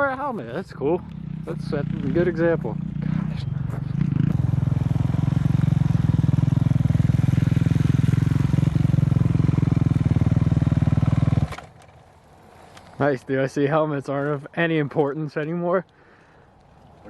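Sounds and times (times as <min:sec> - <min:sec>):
dirt bike engine running: 0:00.7 - 0:12.7.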